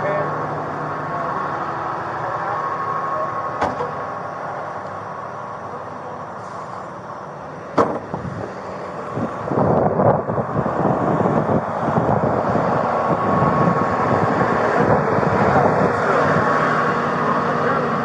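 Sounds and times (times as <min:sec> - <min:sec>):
vehicle engine idling: 0:00.0 - 0:18.0
sharp knock: 0:07.8 - 0:08.0.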